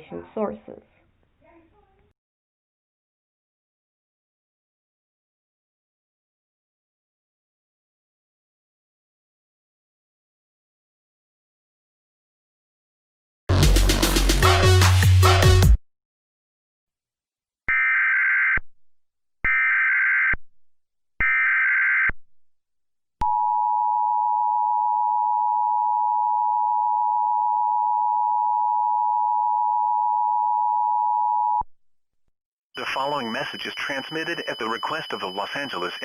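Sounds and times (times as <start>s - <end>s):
music: 13.5s - 15.8s
data tone bursts: 32.8s - 36.0s.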